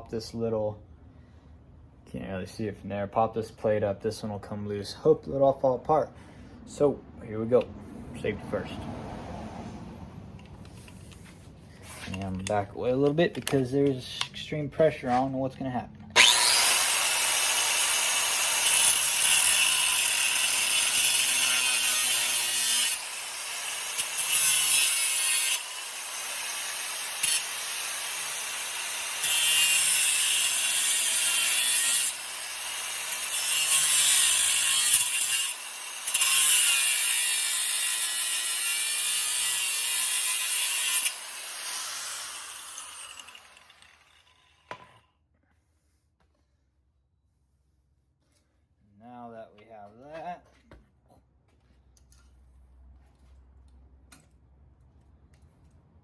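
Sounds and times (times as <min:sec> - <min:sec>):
grinder wheel spinning down: 0:16.2 - 0:36.8, 0:37.8 - 0:45.0
angle grinder grinding steel: 0:16.2 - 0:45.0.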